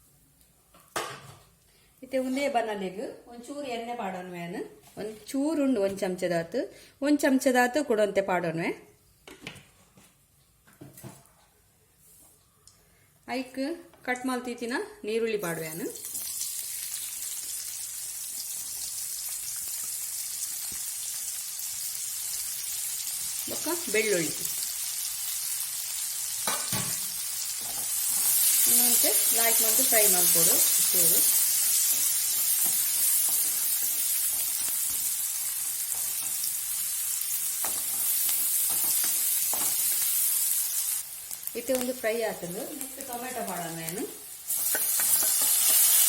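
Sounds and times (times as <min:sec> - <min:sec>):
onions sizzling in oil: 0:15.4 - 0:46.0
spoon scraping and tapping pan: 0:44.6 - 0:46.0.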